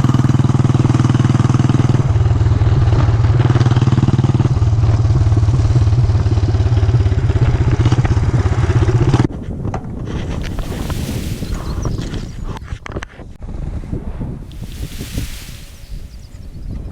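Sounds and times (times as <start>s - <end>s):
wind noise on microphone: 9.4s - 16.9s.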